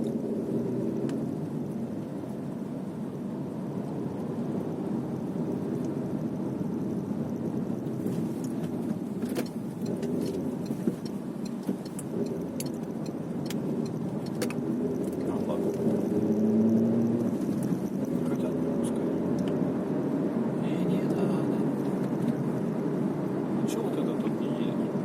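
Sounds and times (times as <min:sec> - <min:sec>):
road and engine hum: 0:00.0 - 0:25.0
sharp ticks: 0:09.4 - 0:15.4.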